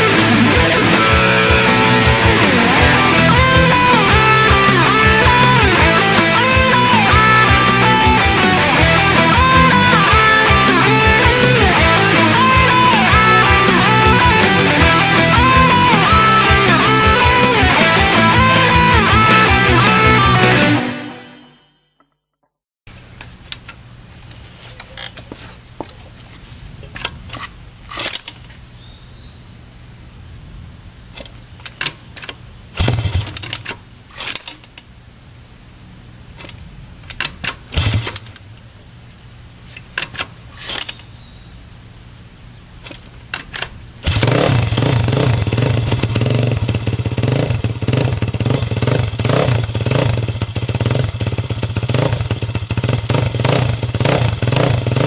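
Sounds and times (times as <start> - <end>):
motorcycle engine running: 0.0 - 20.8, 44.0 - 55.0.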